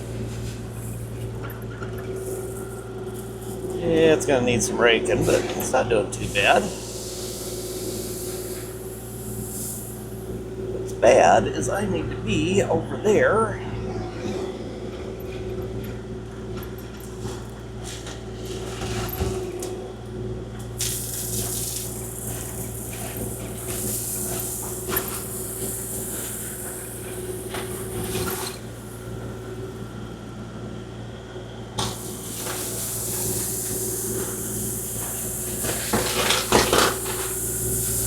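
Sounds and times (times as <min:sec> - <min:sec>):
excavator diesel engine running: 0:00.0 - 0:20.9, 0:21.5 - 0:38.0
rushing hiss: 0:06.2 - 0:10.6, 0:20.8 - 0:29.0, 0:31.8 - 0:38.0.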